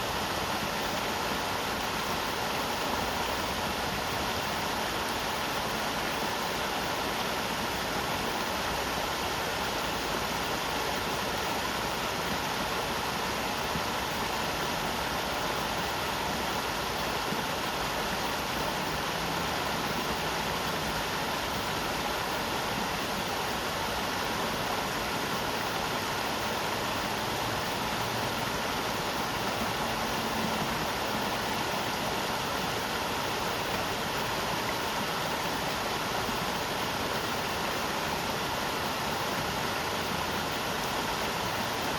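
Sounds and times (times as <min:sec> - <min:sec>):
river water flowing: 0:00.0 - 0:41.9.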